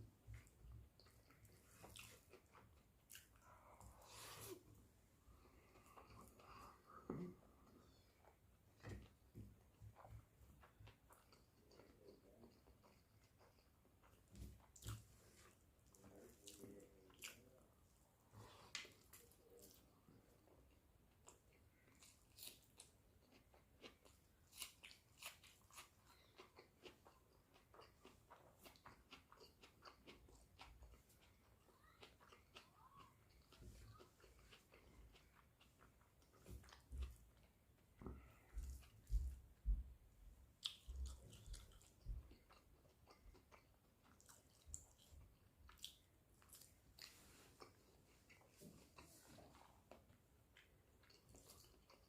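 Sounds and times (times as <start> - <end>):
person chewing food: 0.0 - 52.0
wet chewing clicks: 40.6 - 49.2, 49.9 - 52.0.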